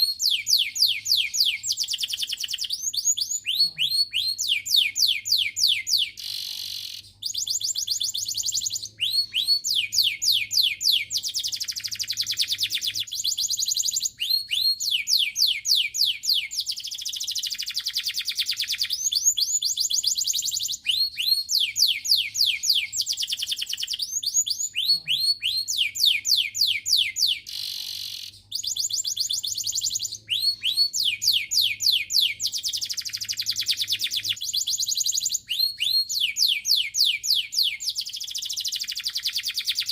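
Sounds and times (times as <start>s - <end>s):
canary singing trills: 0.0s - 39.9s.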